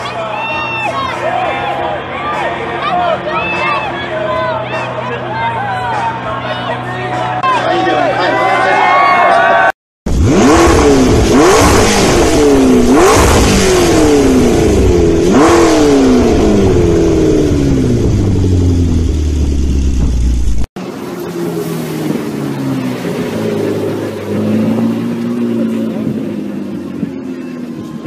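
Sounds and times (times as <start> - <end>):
car engine revving: 10.1 - 27.9.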